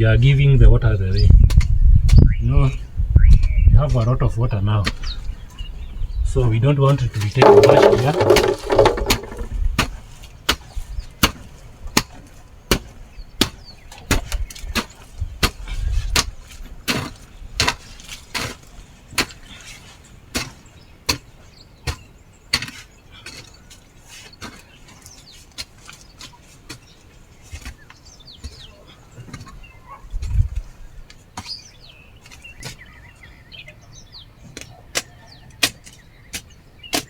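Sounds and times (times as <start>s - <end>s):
digging tool chopping wet soil: 7.4s - 19.4s, 20.3s - 21.3s.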